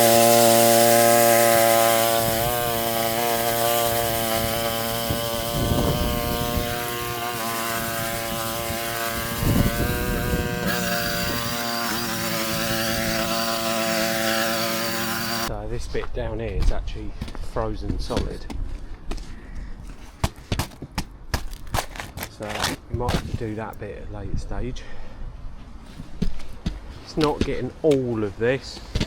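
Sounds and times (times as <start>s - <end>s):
small engine running: 0.0s - 15.5s
brush scraping ground: 0.0s - 23.8s.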